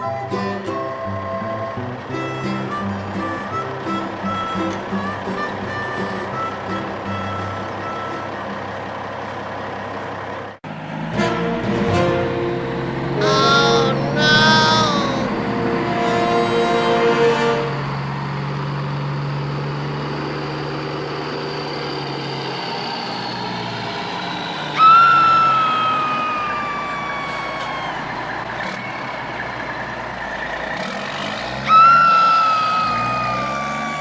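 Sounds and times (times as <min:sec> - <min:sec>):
low hum: 0:10.8 - 0:22.4.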